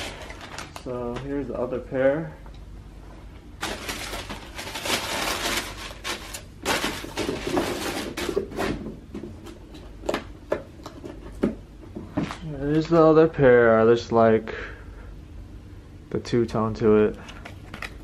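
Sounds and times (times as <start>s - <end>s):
paper and shoe box rustling: 0.0s - 0.8s, 3.6s - 8.9s.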